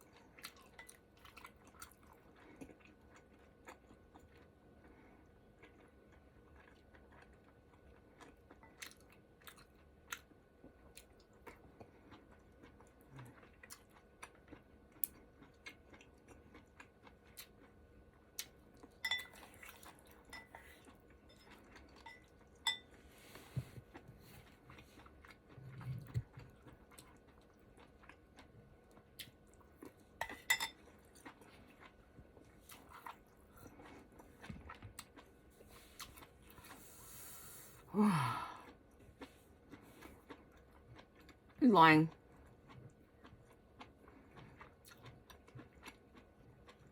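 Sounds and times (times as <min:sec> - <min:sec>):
chewing with wet clicks: 0:00.0 - 0:23.0, 0:23.9 - 0:36.9, 0:38.6 - 0:46.9
utensils clinking on a dish: 0:19.0 - 0:19.4, 0:30.2 - 0:30.8.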